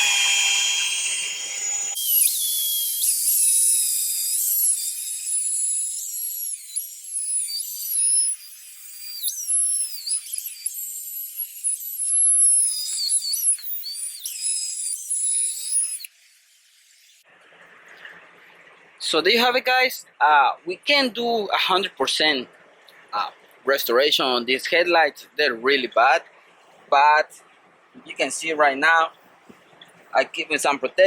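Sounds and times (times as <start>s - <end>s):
power drill whining: 0.0s - 16.1s.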